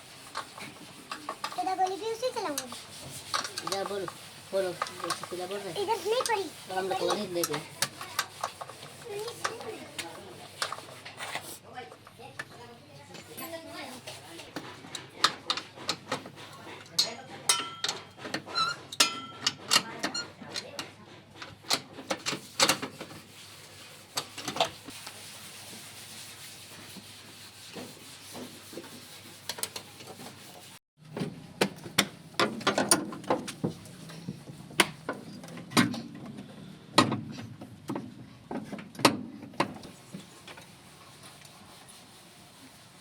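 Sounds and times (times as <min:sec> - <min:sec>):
hand tools clicking and knocking: 0:00.3 - 0:06.4, 0:07.0 - 0:10.8, 0:15.0 - 0:22.9.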